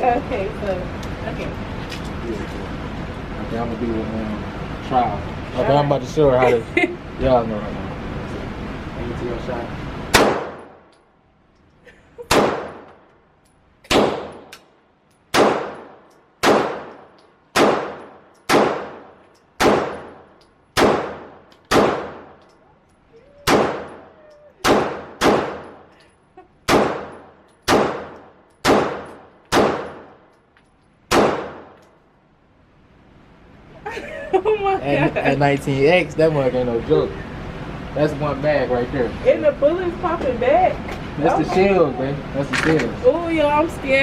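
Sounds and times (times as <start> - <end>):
pistol shots with echo: 10.1 - 10.8, 12.3 - 12.9, 13.9 - 14.5, 15.3 - 22.4, 23.4 - 25.9, 26.7 - 30.2, 31.1 - 31.8.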